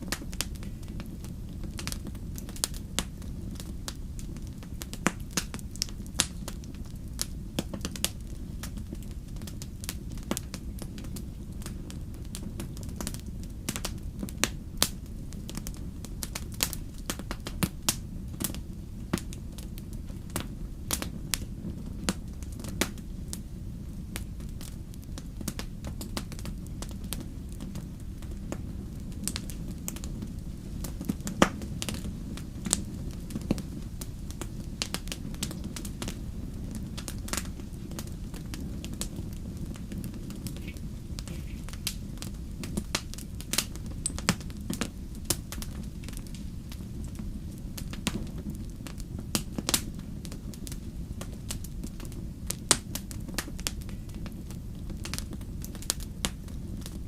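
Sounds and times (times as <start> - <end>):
wood fire crackling: 0.0 - 57.0.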